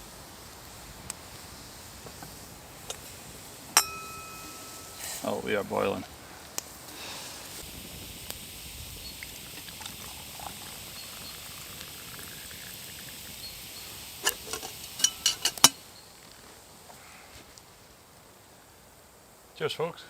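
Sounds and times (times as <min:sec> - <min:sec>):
pot boiling with bubbling hiss: 0:00.0 - 0:20.0
sharp clinks: 0:03.8 - 0:05.3, 0:14.3 - 0:15.8.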